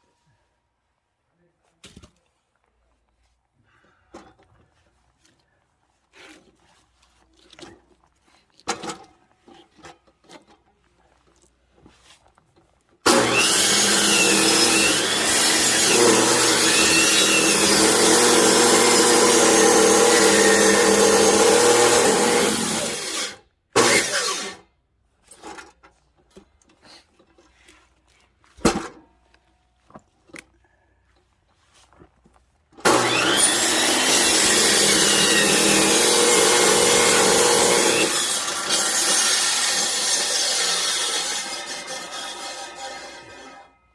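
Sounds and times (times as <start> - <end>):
power saw cutting logs: 13.0 - 24.6, 32.8 - 43.8.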